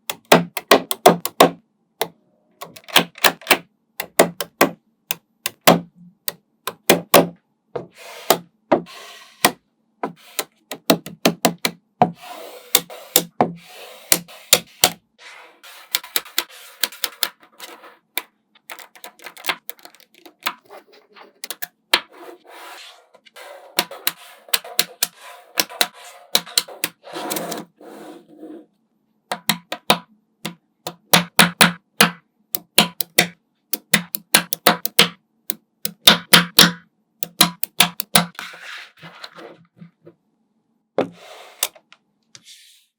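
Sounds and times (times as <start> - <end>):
magnetic balls clicking: 0.0 - 7.2, 15.9 - 17.4, 18.2 - 20.6, 21.4 - 21.8, 23.8 - 27.6, 29.3 - 38.4.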